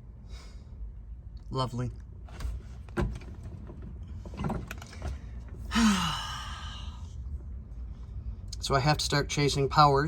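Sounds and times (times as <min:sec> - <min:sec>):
man sighing: 0:05.7 - 0:07.2.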